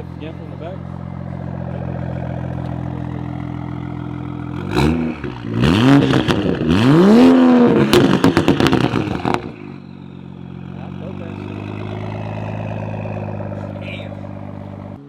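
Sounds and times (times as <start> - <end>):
car engine revving: 0.0 - 15.0
exhaust crackles and pops: 1.4 - 9.8.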